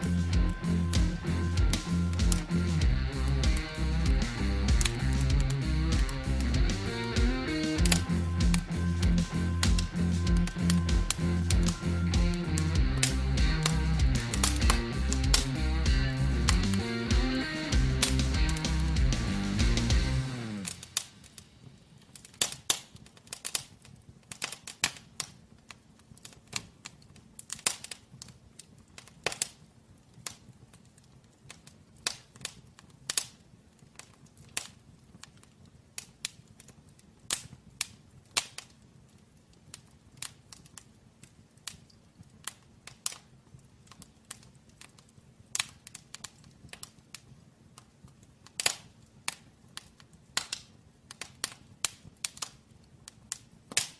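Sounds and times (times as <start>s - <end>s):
firewood crackling and popping: 7.4s - 17.3s, 20.6s - 53.9s.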